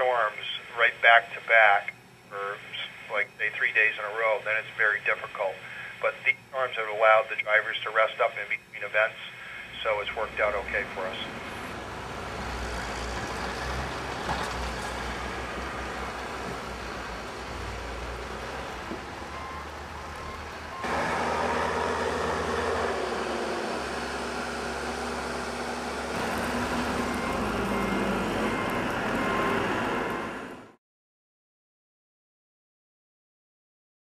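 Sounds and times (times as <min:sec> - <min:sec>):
street traffic noise: 0:09.8 - 0:30.8
vehicle engines running: 0:09.9 - 0:30.7.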